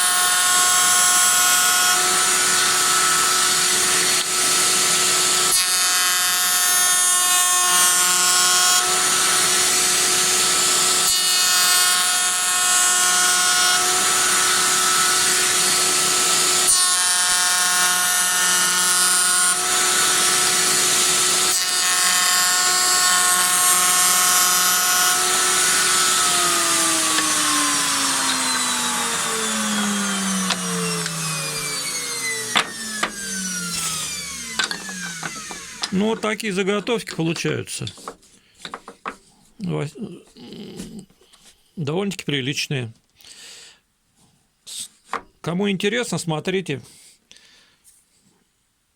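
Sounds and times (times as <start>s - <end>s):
cutter hissing through wood: 0.0s - 6.2s, 13.6s - 39.2s
router motor whining: 0.0s - 39.2s
motor winding down: 19.6s - 36.8s
clicks: 27.0s - 31.2s.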